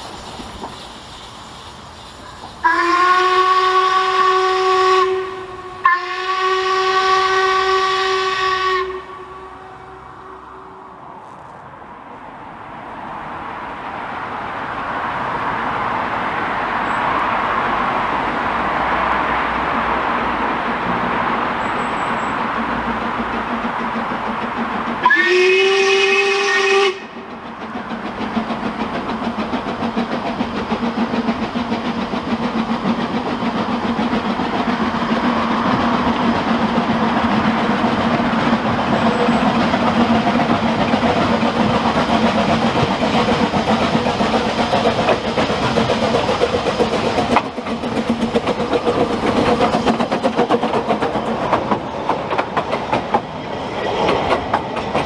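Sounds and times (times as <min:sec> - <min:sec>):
train rumbling: 0:00.0 - 0:55.0
train whistle blowing: 0:02.6 - 0:10.8, 0:25.0 - 0:27.3.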